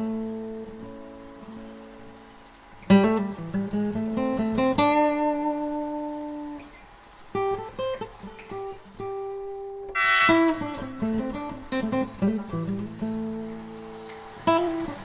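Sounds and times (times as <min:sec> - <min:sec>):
plucked acoustic guitar notes: 0:00.0 - 0:15.0
strummed guitar chord: 0:07.4 - 0:15.0.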